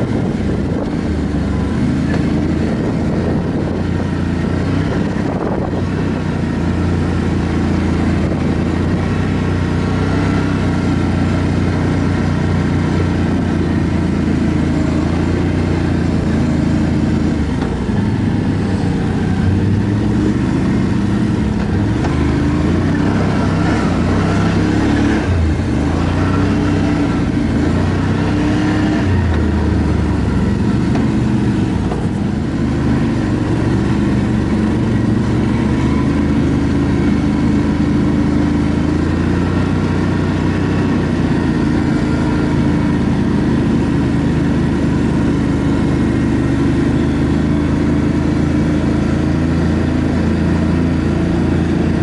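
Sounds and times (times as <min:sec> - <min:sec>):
atv engine running: 0:00.0 - 0:52.0.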